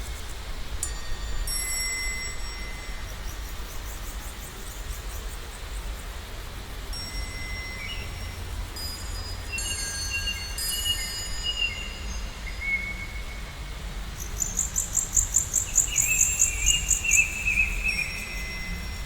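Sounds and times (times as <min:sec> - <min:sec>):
thin ringing chime tones: 0:00.8 - 0:03.5, 0:07.0 - 0:12.5, 0:16.6 - 0:19.0
thin whistled call: 0:09.4 - 0:19.0
fast insect-like chirping: 0:14.2 - 0:19.0.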